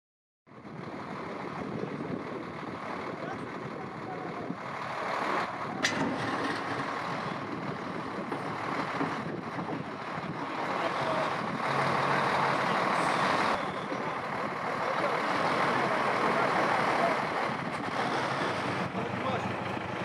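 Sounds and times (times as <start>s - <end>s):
low engine hum: 0.5s - 20.0s
traffic noise: 0.5s - 20.0s.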